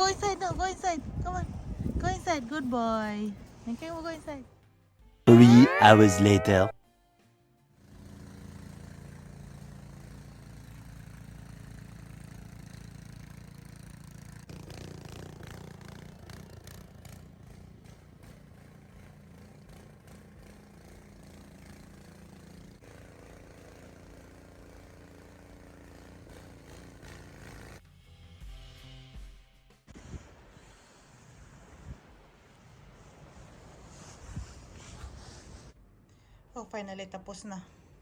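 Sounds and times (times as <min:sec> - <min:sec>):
engine running: 0:07.8 - 0:28.1.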